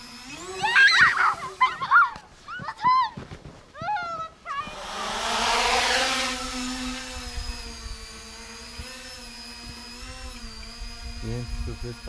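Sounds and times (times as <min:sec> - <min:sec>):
drone propellers buzzing: 0:00.0 - 0:01.9, 0:04.5 - 0:12.0.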